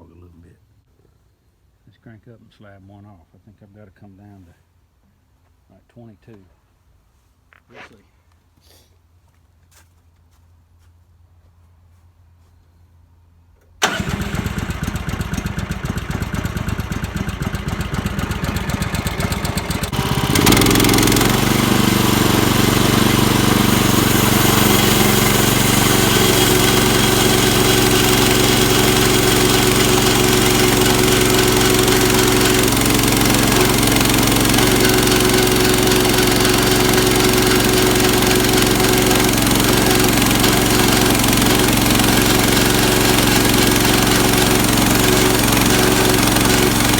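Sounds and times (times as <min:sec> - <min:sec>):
gasoline engine starting and running: 0:13.6 - 0:46.9.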